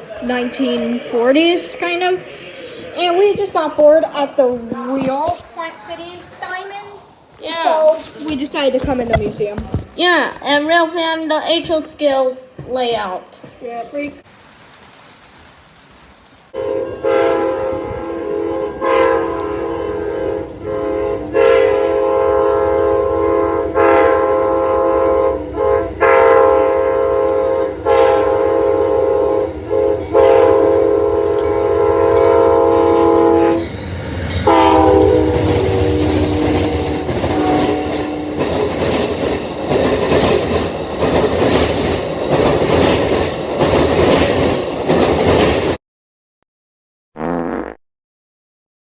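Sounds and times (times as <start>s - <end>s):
train horn blasts: 16.5s - 33.7s, 34.4s - 38.7s
train wheels clattering over rail joints: 33.0s - 45.8s.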